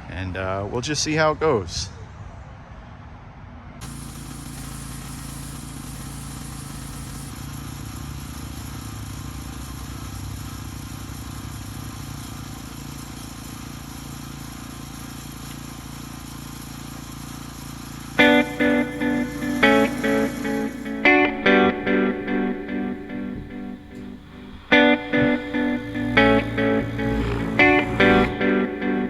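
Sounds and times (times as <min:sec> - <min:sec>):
water spray hissing: 0:03.8 - 0:07.5, 0:18.2 - 0:28.4
pressure washer engine running: 0:03.8 - 0:29.0.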